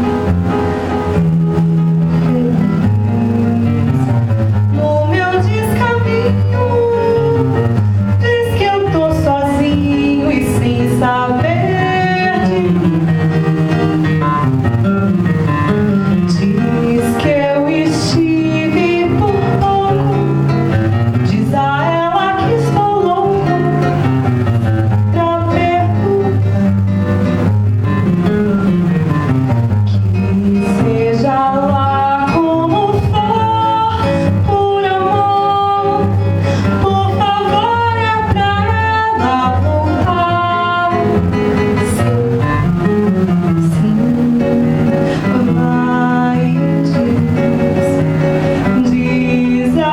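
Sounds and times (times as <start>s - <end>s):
nylon-string guitar playing: 0.0s - 49.9s.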